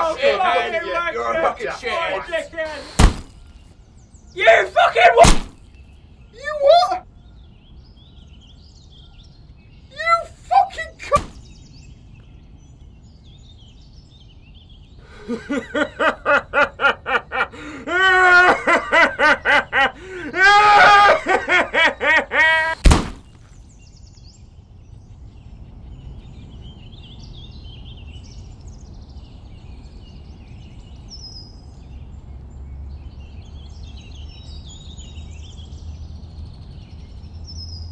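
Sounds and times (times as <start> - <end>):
birds chirping: 0.0 - 37.9
sharp bang: 2.9 - 3.4, 5.2 - 5.6, 11.1 - 11.5, 22.8 - 23.4
person laughing: 15.1 - 22.8.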